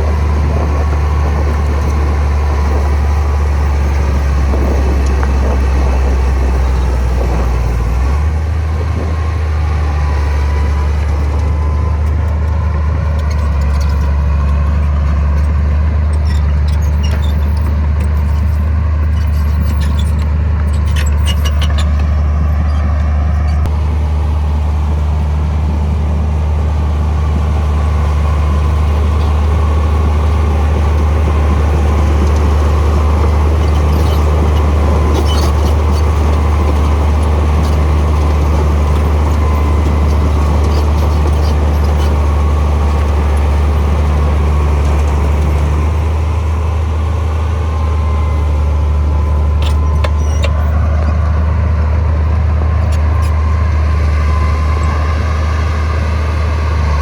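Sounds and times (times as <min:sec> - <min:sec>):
bulldozer diesel engine droning: 0:00.0 - 0:57.0.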